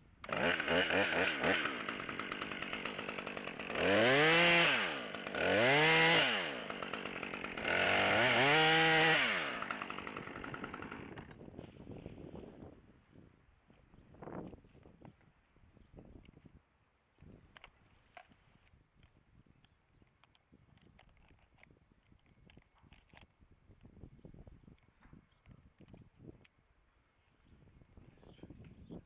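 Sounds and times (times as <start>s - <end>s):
chainsaw revving: 0.2s - 11.4s.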